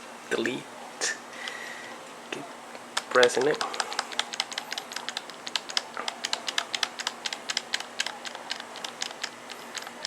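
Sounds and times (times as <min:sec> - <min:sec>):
keyboard key clicking rapidly: 0:02.9 - 0:10.0.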